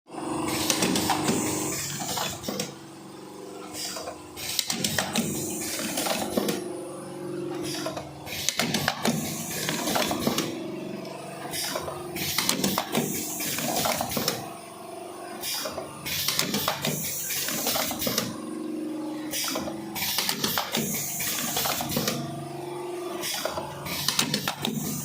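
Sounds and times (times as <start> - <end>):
machine clatter and knocking: 0.5 - 2.8, 3.8 - 6.6, 7.6 - 10.6, 11.5 - 14.5, 19.4 - 22.2.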